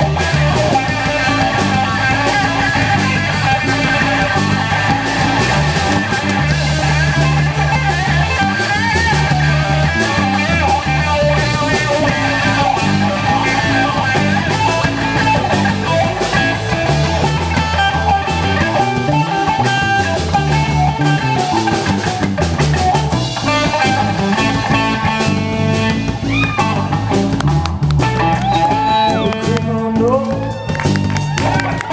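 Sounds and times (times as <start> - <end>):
bass and drums playing blues: 0.0 - 31.9
lead guitar solo: 0.0 - 31.9.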